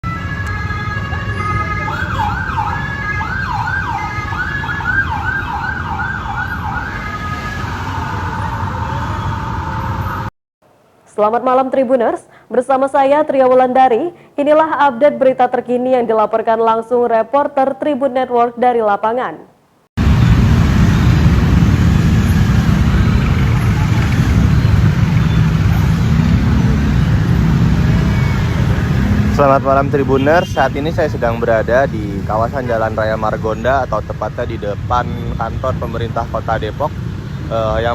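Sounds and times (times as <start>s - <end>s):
emergency siren yelping: 0.0s - 10.3s, 20.0s - 29.4s
road traffic rumble: 0.0s - 11.1s, 20.0s - 37.9s.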